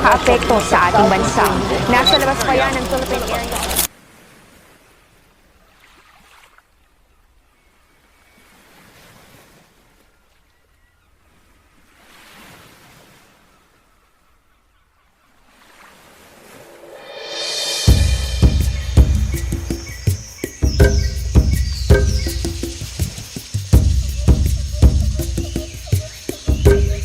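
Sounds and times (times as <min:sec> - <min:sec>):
faint rushing noise: 0:16.1 - 0:27.0.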